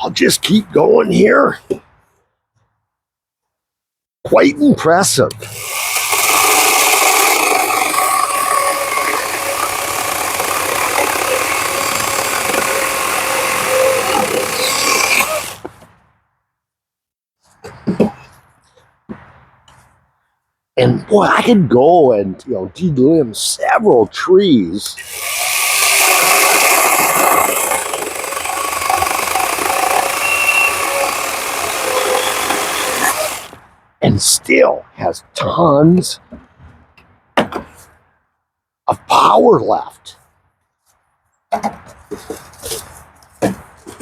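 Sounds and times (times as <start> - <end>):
electric chainsaw cutting log: 5.5 - 15.7, 25.0 - 33.6.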